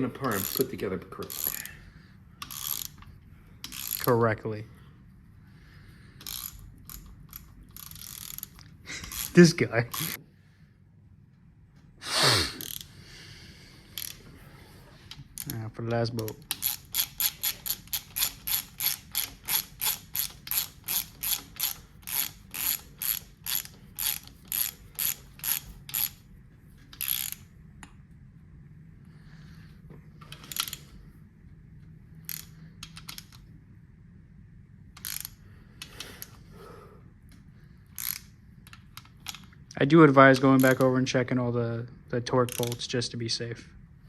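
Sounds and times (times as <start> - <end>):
hand ratchet clicking: 0.0 - 1.8, 2.4 - 4.2, 6.2 - 10.2, 12.6 - 12.9, 13.9 - 14.2, 15.1 - 26.2, 27.0 - 27.4, 30.3 - 30.9, 32.2 - 33.4, 35.0 - 36.4, 37.9 - 39.6, 40.3 - 41.0, 42.4 - 43.0.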